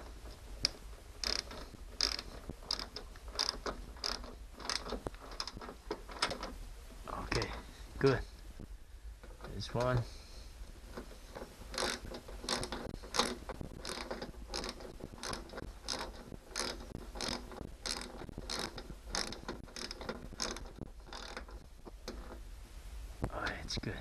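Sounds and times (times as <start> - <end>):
socket ratchet clicking: 0.6 - 6.5, 11.7 - 22.4.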